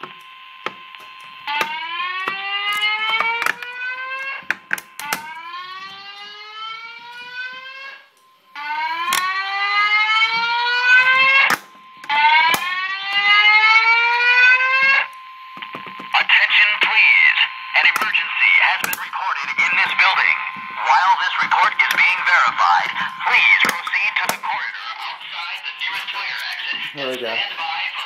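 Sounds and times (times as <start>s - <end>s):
alarm speaker whoop tone: 5.1s - 15.6s
sharp clicks: 18.8s - 19.1s.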